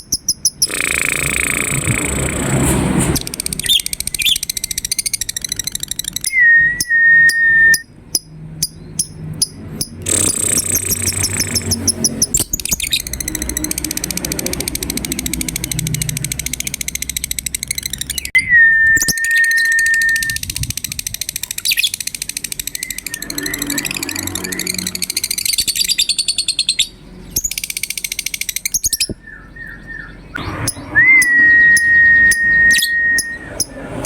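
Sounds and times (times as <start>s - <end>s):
lovebirds chattering trills: 0.0s - 2.3s, 3.3s - 18.4s, 19.0s - 34.0s
sharp clicks: 0.0s - 2.5s, 9.4s - 18.4s
steady high whistle: 6.3s - 7.9s, 18.4s - 20.4s, 30.7s - 33.8s.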